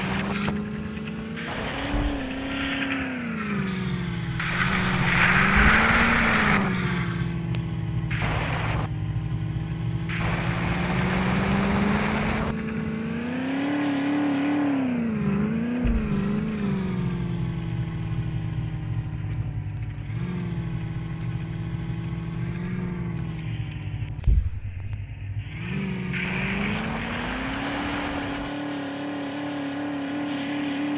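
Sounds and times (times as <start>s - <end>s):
engine revving under load: 0.0s - 30.9s
rushing noise: 3.8s - 9.3s, 10.0s - 12.8s.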